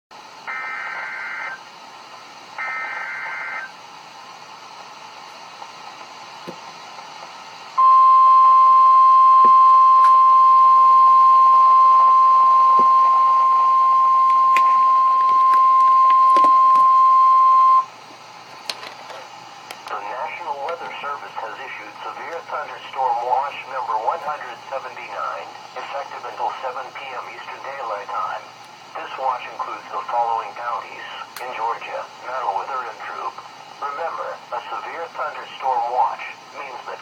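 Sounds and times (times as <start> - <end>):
screeching data bursts: 0.4 - 1.6
steady warning alarm tone: 0.4 - 1.8, 2.6 - 3.9, 7.8 - 17.9
faint radio hiss: 18.6 - 37.0.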